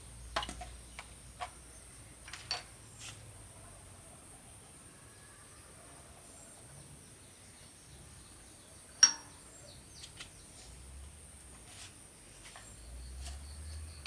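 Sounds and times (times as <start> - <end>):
metallic clink with ring: 9.0 - 9.4.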